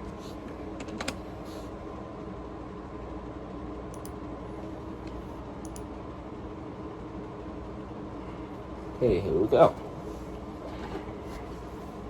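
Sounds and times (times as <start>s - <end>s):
background hum and hiss: 0.0s - 12.0s
faint clicks: 5.1s - 5.9s.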